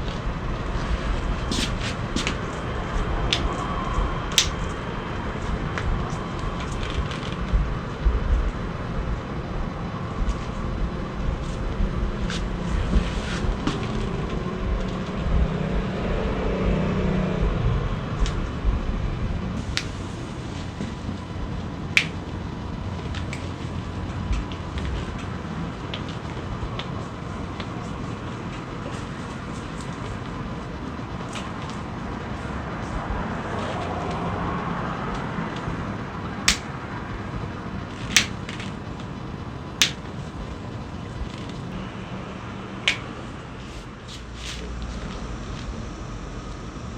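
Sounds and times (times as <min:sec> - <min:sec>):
steady low rumble: 0:00.0 - 0:46.9
sharp joint cracks: 0:04.3 - 0:04.8, 0:36.5 - 0:36.7, 0:42.9 - 0:43.2.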